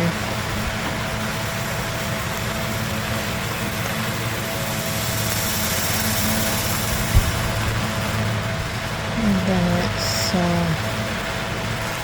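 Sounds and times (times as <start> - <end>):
rushing hiss: 0.0 - 10.5
motor hum: 0.0 - 12.0.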